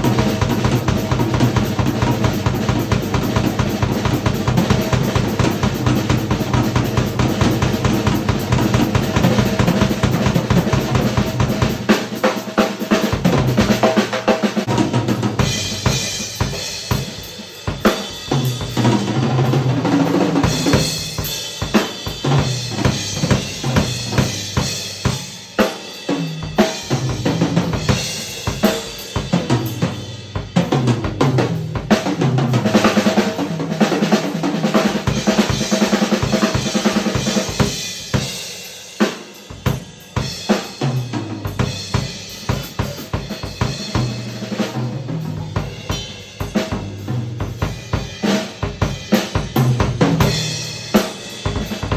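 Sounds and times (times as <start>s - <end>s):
bass drum: 0.0s - 12.0s, 12.9s - 17.2s, 17.8s - 25.3s, 40.4s - 51.9s
drum kit played freely: 0.0s - 51.9s
snare drum: 39.0s - 51.9s.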